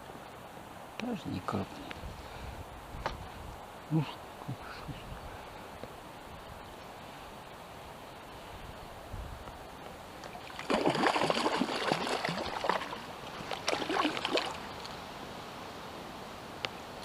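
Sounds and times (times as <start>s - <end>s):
water splashing: 10.1s - 15.0s.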